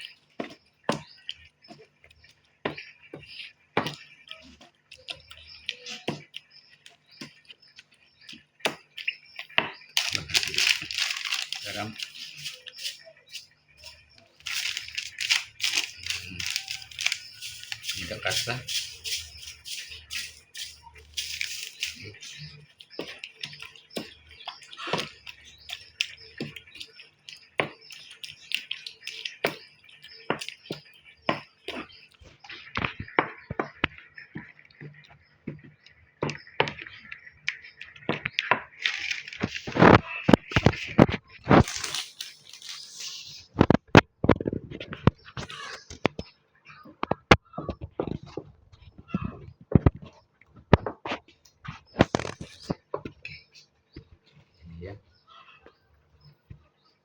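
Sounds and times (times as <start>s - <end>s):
pestle grinding in a mortar: 10.0s - 24.4s.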